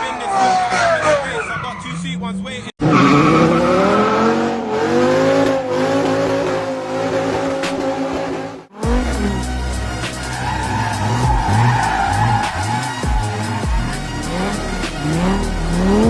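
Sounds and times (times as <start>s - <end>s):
car engines revving high: 0.0s - 16.0s
tyres squealing: 9.9s - 16.0s.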